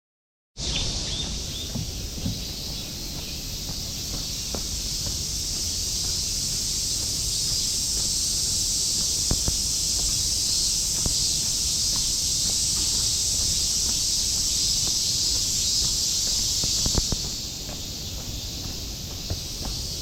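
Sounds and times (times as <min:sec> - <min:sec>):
cicadas shrilling: 0:00.6 - 0:20.0
faint footsteps: 0:00.6 - 0:20.0.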